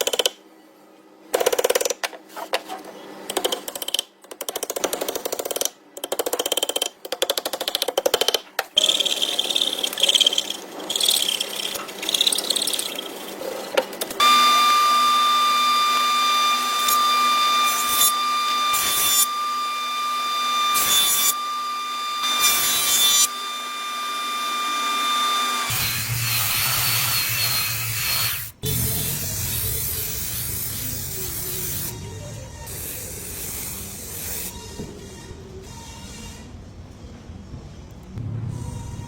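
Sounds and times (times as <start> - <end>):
electric saw whining: 14.1 - 30.2.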